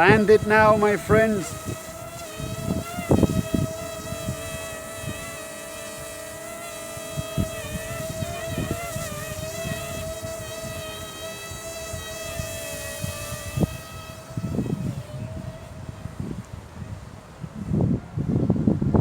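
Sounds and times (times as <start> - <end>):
drone propellers whining: 0.0 - 4.4
wind rumbling on microphone: 0.0 - 19.0.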